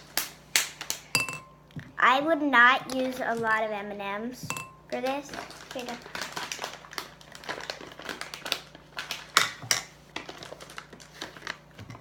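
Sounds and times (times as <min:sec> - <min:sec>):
plastic candy bag crinkling: 0:05.0 - 0:12.0.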